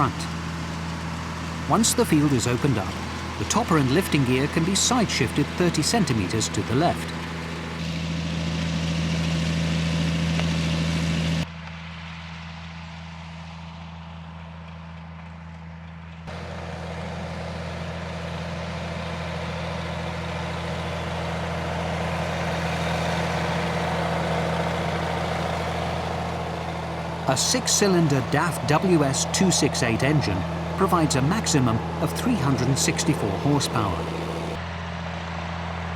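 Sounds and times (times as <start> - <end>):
diesel engine droning: 0.0 - 35.9.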